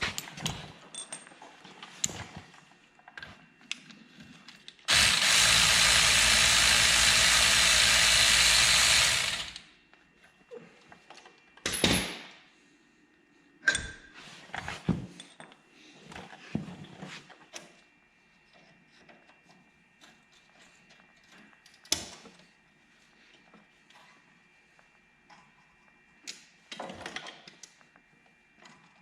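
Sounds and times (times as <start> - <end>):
power tool running: 4.9 - 9.7.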